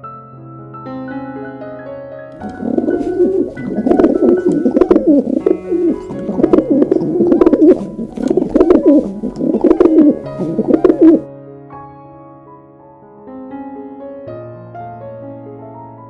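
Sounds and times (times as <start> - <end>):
chorus of wavering bird calls: 2.4 - 11.2
piano notes: 2.4 - 11.3.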